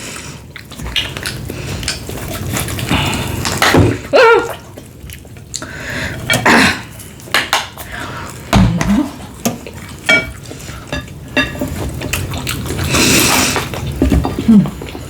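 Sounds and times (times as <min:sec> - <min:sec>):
cutlery and dishes clinking: 0:09.5 - 0:12.2.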